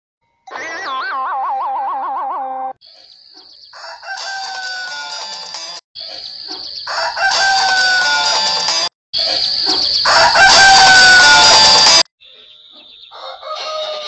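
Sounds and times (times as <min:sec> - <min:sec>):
cartoon rooster crowing: 0:03.8 - 0:05.2, 0:06.9 - 0:08.4, 0:10.0 - 0:11.9, 0:13.2 - 0:14.0.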